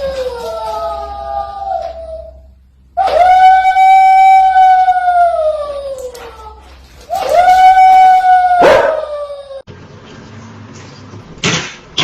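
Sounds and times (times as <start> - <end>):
dog howling: 3.0 - 9.6.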